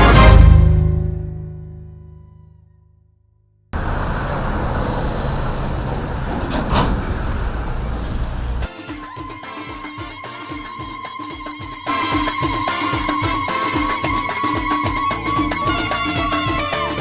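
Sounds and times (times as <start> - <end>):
loud steady rumbling: 3.8 - 8.7.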